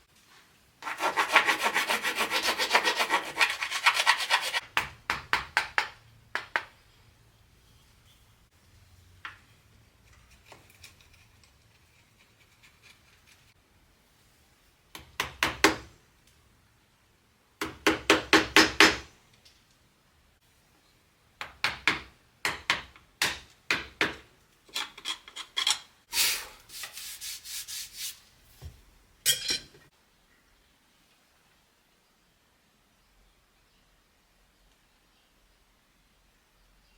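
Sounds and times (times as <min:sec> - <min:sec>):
abrasive tool rubbing on wood: 0:00.8 - 0:04.6.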